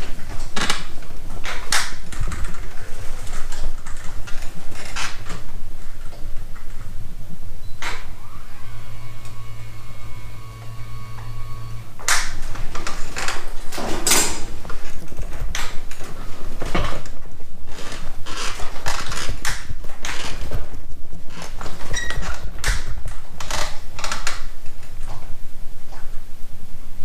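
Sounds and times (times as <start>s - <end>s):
motor humming: 7.8s - 13.4s.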